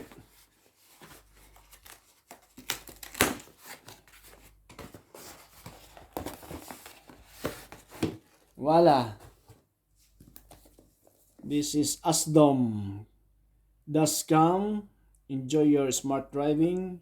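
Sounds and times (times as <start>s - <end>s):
packaging rustling and tearing: 0.0s - 8.6s.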